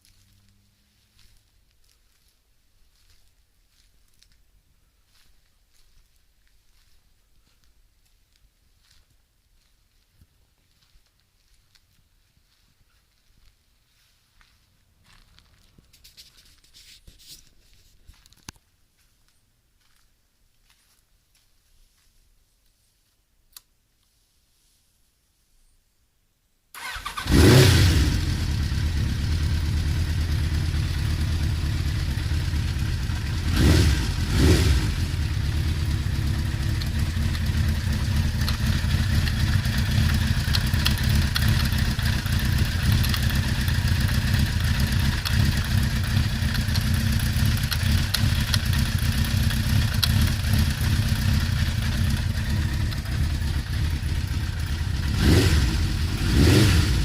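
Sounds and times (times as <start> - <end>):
engine clatter: 26.8 - 57.0
motorcycle engine idling: 26.8 - 57.0
engine revving blips: 55.1 - 57.0.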